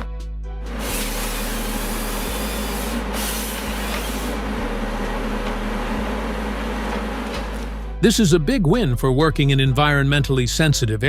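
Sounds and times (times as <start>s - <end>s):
bass line background music: 0.0s - 11.0s
harvester engine and hydraulics hissing: 0.7s - 8.0s.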